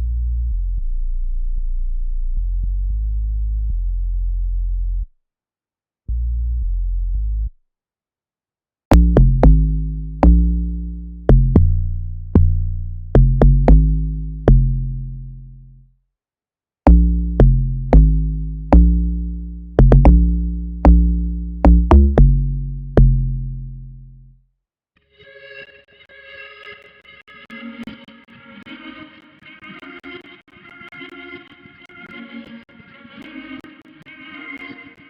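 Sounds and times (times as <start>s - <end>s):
log drum bass notes: 8.9s - 15.6s, 16.9s - 24.2s
held low bass note: 8.9s - 15.8s, 16.9s - 24.3s.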